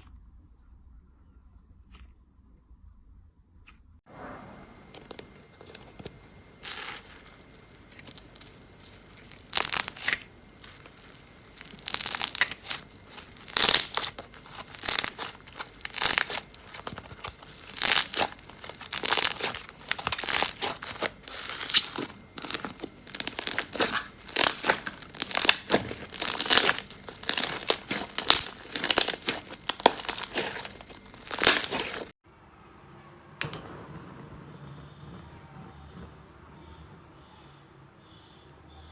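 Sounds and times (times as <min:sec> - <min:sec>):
slime pressed and pulled by hand: 0:04.9 - 0:32.1.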